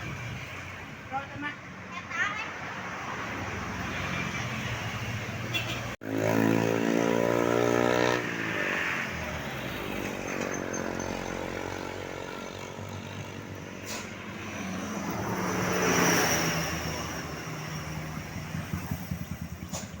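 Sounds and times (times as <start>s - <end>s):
vehicles passing by: 0.0s - 20.0s.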